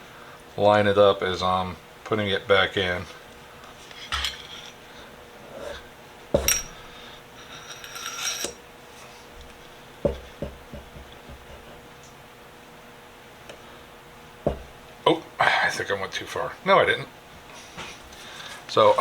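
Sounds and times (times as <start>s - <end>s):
metal clinks and knocks: 3.9s - 4.8s, 6.4s - 6.8s
screwdriver shaft scraping: 7.5s - 8.6s.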